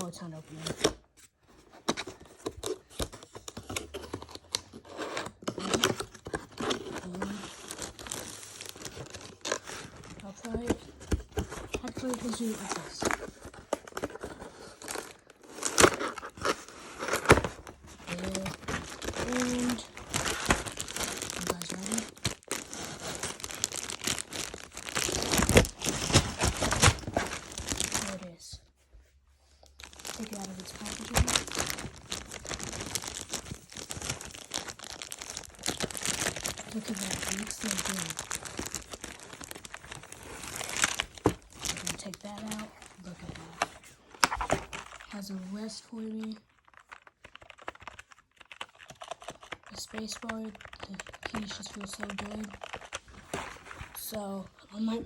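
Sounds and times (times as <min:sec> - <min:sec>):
cardboard rustling and scraping: 0:00.5 - 0:28.4
packaging crackling and ripping: 0:01.9 - 0:28.4, 0:29.6 - 0:45.3, 0:46.0 - 0:54.2.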